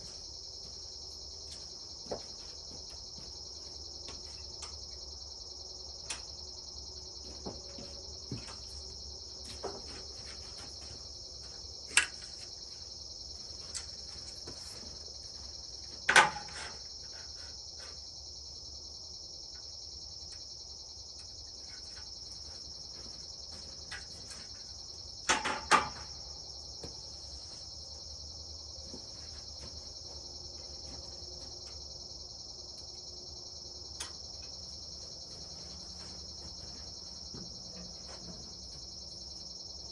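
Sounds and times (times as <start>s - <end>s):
crickets chirping: 0.0s - 39.9s
sharp knocks and clatters: 16.0s - 16.8s, 25.2s - 26.2s.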